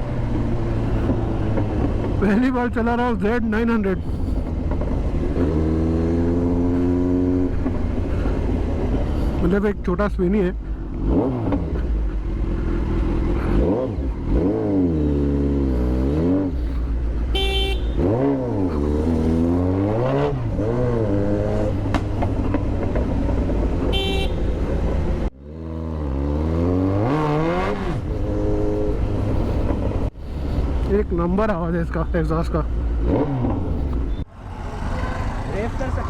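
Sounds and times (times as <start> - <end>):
motorcycle engine revving: 0.0 - 31.5, 32.6 - 36.0
horn toot: 17.3 - 18.6, 23.8 - 24.7.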